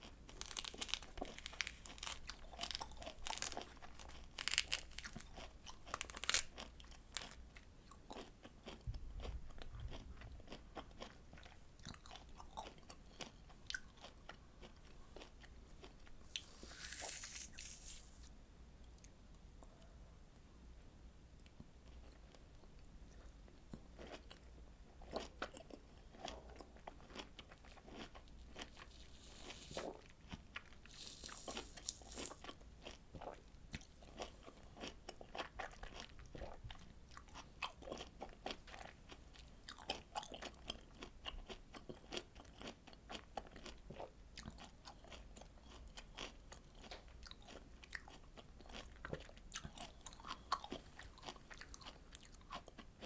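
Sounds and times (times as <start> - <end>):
wet bites and chewing: 0.3 - 7.4
short rustling hiss: 16.3 - 18.3.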